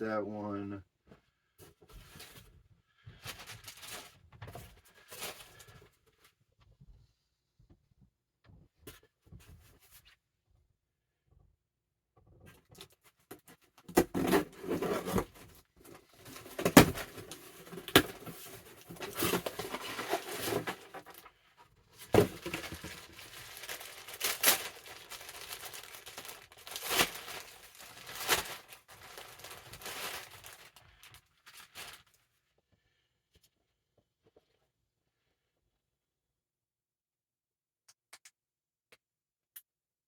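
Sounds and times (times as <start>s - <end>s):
packaging being torn and crinkled: 16.2s - 21.3s, 22.1s - 32.1s.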